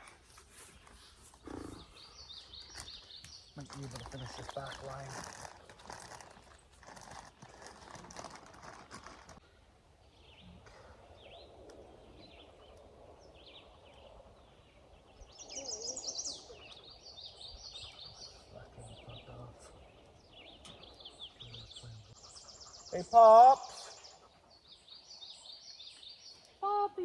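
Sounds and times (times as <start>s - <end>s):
birds chirping: 0.0s - 27.0s
rustling and clicking: 2.6s - 9.4s.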